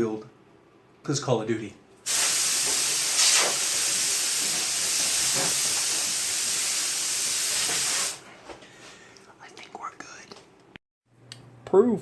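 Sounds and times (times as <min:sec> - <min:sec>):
compressed air duster hissing: 0:02.1 - 0:08.2.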